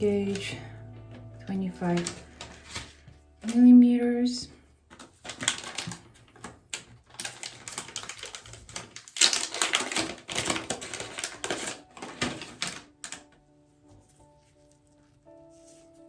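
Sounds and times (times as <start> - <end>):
packaging crackling and rustling: 0.0 - 0.6, 1.8 - 3.7, 4.9 - 13.4
soft background music: 0.0 - 5.9, 9.2 - 16.0.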